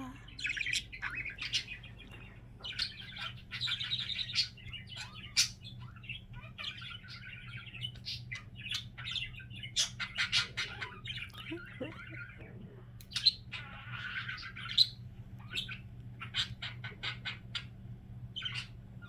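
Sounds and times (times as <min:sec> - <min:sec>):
budgerigar warbling: 0:00.3 - 0:01.8.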